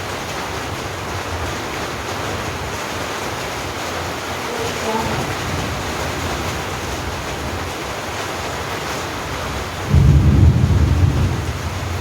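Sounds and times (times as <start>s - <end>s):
rain hissing: 0.0s - 12.0s.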